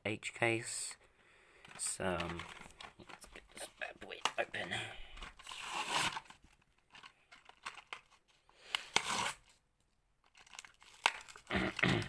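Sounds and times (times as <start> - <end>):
plastic crinkling: 1.6 - 9.4, 10.2 - 12.0
cardboard tearing: 5.2 - 6.4, 8.7 - 9.5, 10.3 - 12.0.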